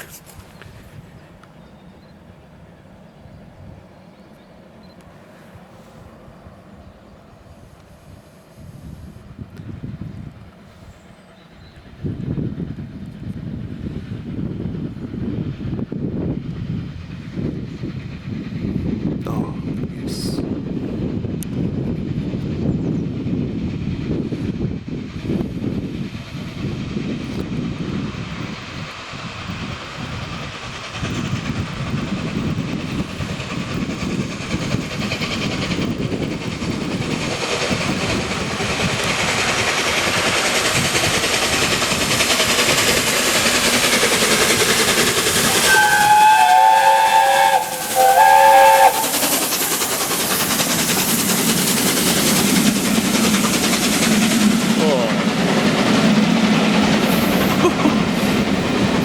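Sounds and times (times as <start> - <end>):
steam train passing at speed: 0.0 - 59.0
steam whistle blasts: 45.4 - 49.6.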